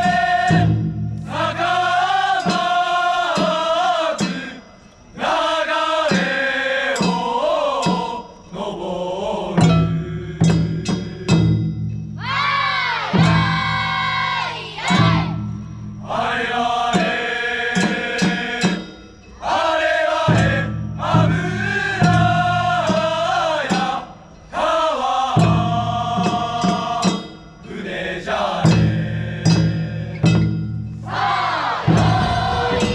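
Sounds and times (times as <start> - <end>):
group of voices chanting: 0.0 - 11.6, 12.2 - 15.4, 16.0 - 32.9.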